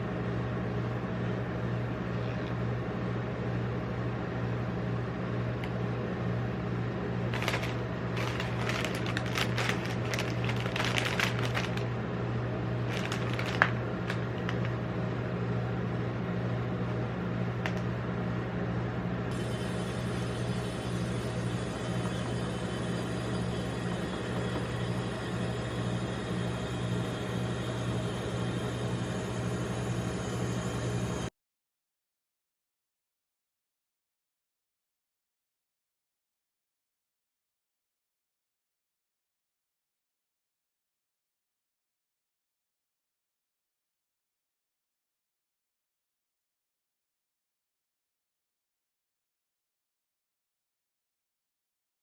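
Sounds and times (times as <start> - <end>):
freezer humming: 5.4 - 31.3.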